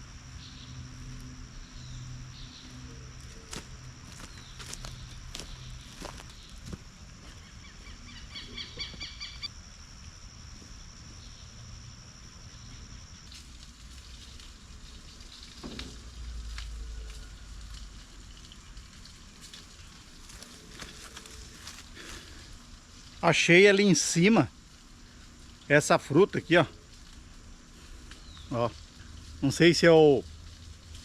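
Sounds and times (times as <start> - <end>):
high steady insect buzz: 0.0 - 31.0
rapid pulsing bird call: 7.5 - 9.5
faint rustles and clicks: 13.2 - 23.2.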